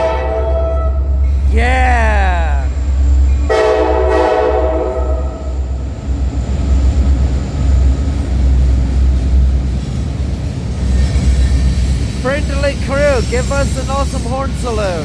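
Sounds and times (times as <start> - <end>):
locomotive air horn blast: 0.0 - 1.1, 3.5 - 5.5
train rumbling past: 0.0 - 15.0.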